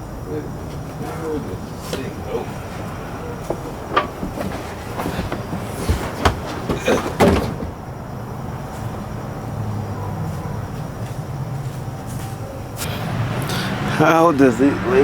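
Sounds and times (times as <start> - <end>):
carpet knocks and scrapes: 1.9 - 7.7.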